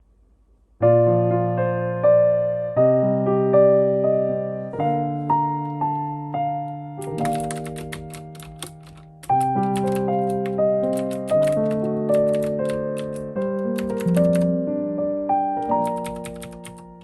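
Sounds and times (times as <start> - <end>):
electric piano chords: 0.8 - 17.0
rapid sharp clicks: 7.0 - 14.5, 15.6 - 17.0.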